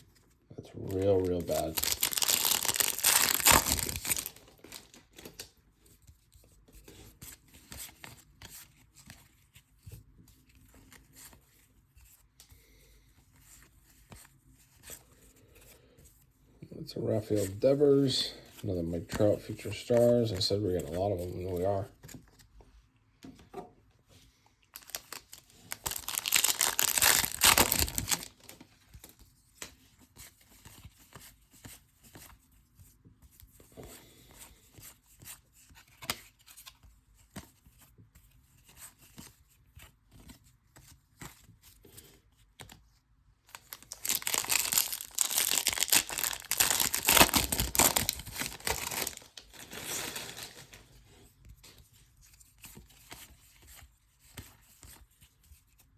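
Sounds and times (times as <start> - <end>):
foil wrappers tearing and crinkling: 0.8 - 5.4, 24.8 - 28.6, 43.5 - 50.8.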